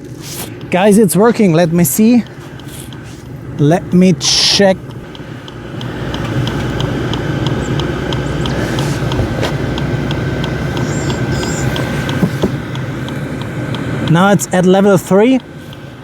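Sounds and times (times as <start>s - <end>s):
blower fan humming: 0.0s - 16.0s
fuel pump ticking: 0.0s - 16.0s.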